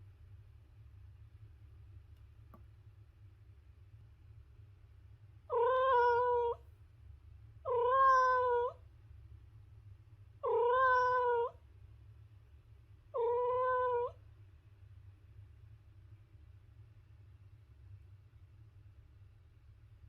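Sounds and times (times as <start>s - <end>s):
cat meowing: 5.5s - 6.6s, 7.7s - 8.8s, 10.4s - 11.6s, 13.2s - 14.2s.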